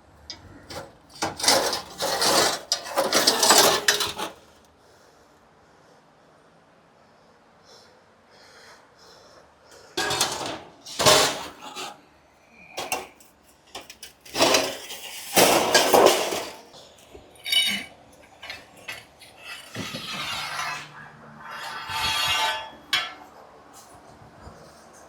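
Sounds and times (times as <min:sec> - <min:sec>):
metal tools clattering and clinking: 0:00.3 - 0:04.4, 0:10.0 - 0:11.9, 0:12.8 - 0:23.9.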